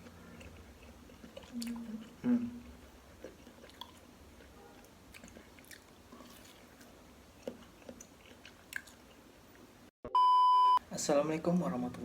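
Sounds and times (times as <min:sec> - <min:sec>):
person chewing food: 0:00.0 - 0:09.7.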